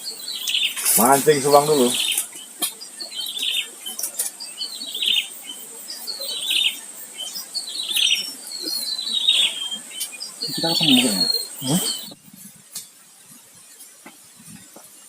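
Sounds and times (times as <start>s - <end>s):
bird singing descending phrase: 7.7s - 12.2s.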